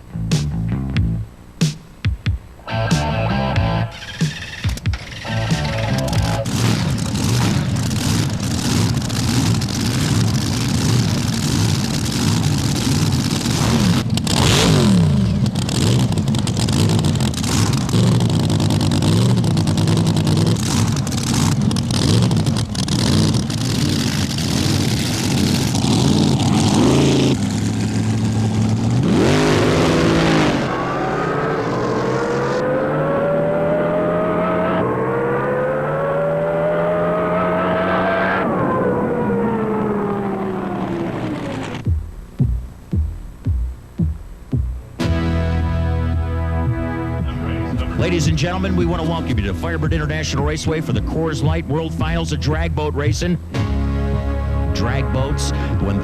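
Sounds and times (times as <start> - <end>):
racing boat engine revving: 5.1 - 42.0.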